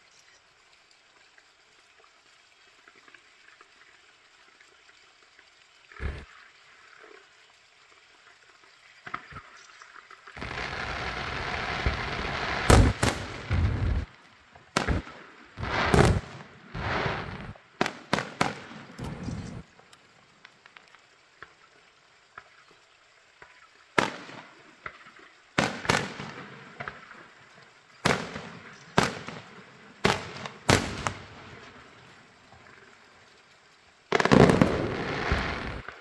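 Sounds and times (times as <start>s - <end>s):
firework bangs: 10.4s - 20.0s, 24.0s - 24.6s, 25.6s - 27.1s, 28.1s - 32.2s, 34.1s - 36.0s
firework crackling: 10.4s - 21.5s, 24.0s - 33.5s, 34.1s - 36.0s.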